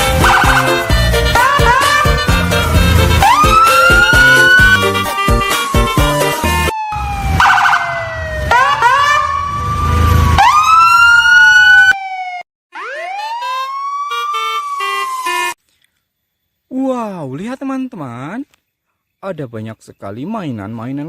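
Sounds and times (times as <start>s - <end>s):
background music: 0.0s - 6.7s
electronic siren wailing: 0.0s - 15.6s.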